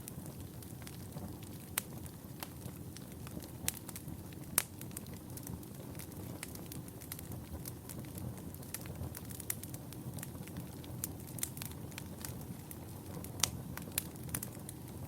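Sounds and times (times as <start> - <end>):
wood fire crackling and popping: 0.0 - 15.0.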